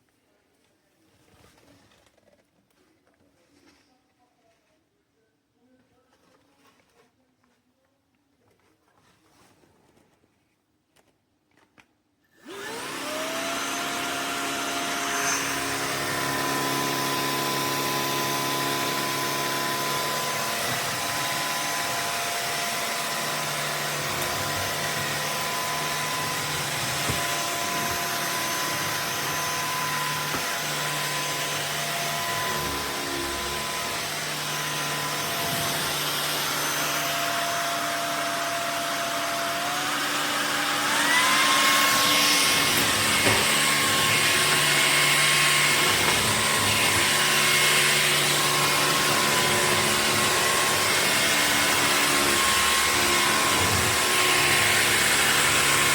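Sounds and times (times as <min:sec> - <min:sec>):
stick vacuum motor whining: 0:12.3 - 0:55.9.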